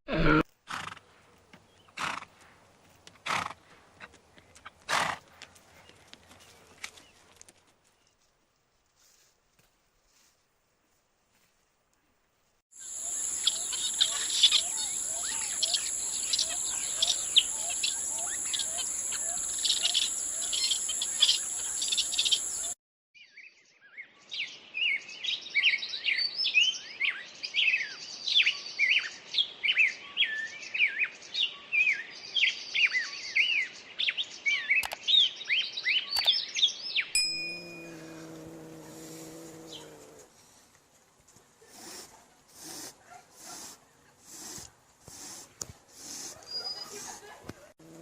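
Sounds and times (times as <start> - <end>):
small birds chirping: 12.8 - 22.8, 28.7 - 40.7, 41.6 - 48.0.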